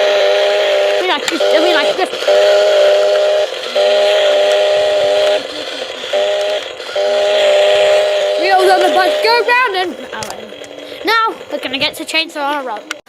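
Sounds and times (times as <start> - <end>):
steady whistle-like tone blasts: 0.0 - 9.7.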